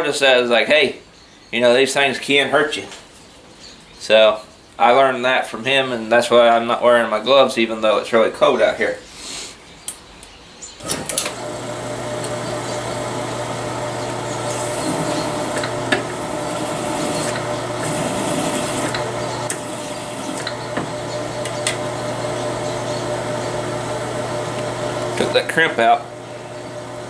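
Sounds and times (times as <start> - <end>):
small clicks: 9.9 - 25.4
cutter rasping on brass cases: 10.8 - 25.4
small electric motor running: 10.8 - 27.0.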